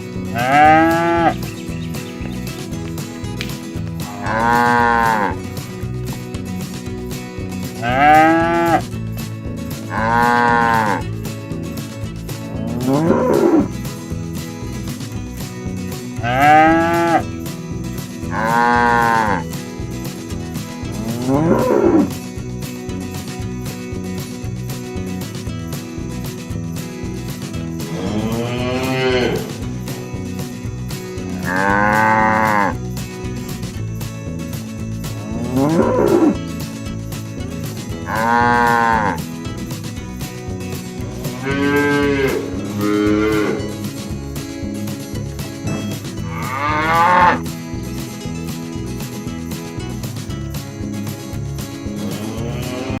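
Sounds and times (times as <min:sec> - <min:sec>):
background music with steady beat: 0:00.0 - 0:53.0
cattle mooing: 0:00.3 - 0:01.5, 0:04.0 - 0:05.4, 0:07.8 - 0:08.8, 0:09.9 - 0:11.1, 0:12.6 - 0:13.7, 0:16.2 - 0:17.2, 0:18.3 - 0:19.4, 0:27.8 - 0:29.7, 0:31.2 - 0:32.8, 0:35.2 - 0:36.4, 0:38.0 - 0:39.2, 0:41.0 - 0:43.8, 0:46.2 - 0:47.4, 0:52.0 - 0:53.0.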